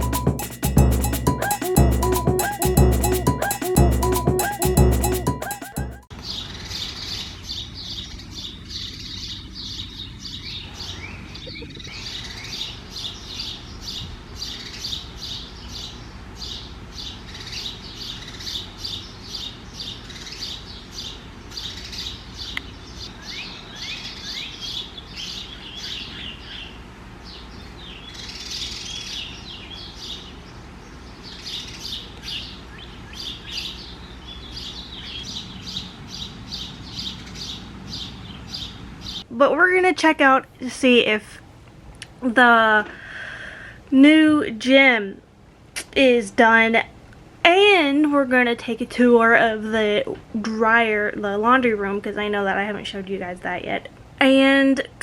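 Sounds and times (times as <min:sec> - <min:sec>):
birds chirping: 0:00.0 - 0:39.3.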